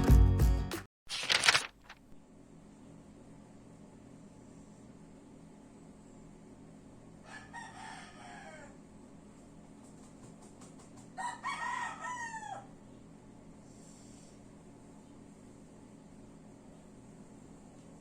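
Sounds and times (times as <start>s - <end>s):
rooster crowing: 7.2s - 8.8s, 11.2s - 12.7s.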